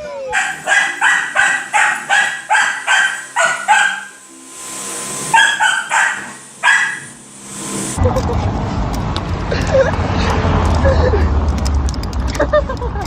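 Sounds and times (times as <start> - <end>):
dog barking high-pitched: 0.1 - 4.2, 5.3 - 7.2.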